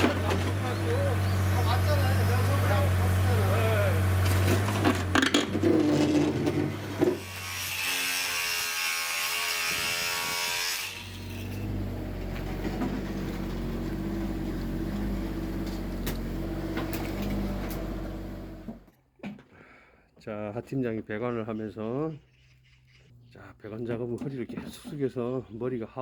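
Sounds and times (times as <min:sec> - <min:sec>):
low motor hum: 0:00.0 - 0:07.0, 0:11.3 - 0:18.9
power tool whirring: 0:00.5 - 0:18.8.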